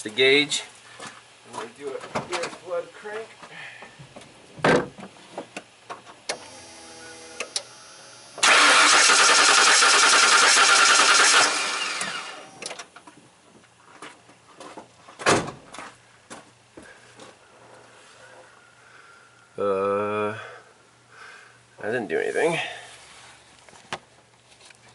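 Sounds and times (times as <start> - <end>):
thump: 4.6 - 5.0, 15.2 - 15.6
engine cranking by starter: 6.3 - 12.7.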